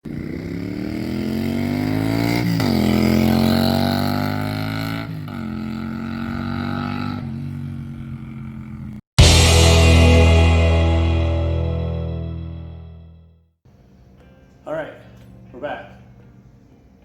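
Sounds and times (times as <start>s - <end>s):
motorcycle engine accelerating: 0.0s - 13.1s.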